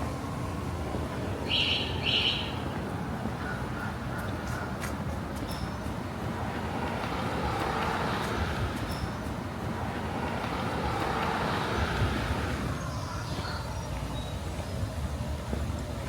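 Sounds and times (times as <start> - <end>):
vehicle passing by: 5.7 - 13.4.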